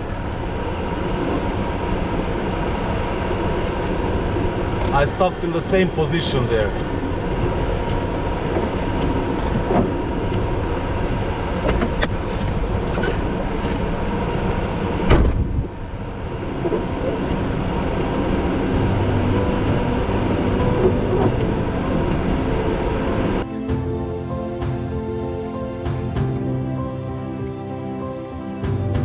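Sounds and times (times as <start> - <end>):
blizzard wind rumble: 0.0 - 5.6.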